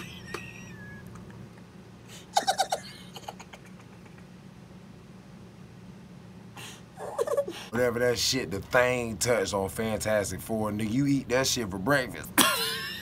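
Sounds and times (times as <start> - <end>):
person laughing: 0.0 - 1.4, 2.2 - 4.4, 7.0 - 7.7, 12.4 - 13.0.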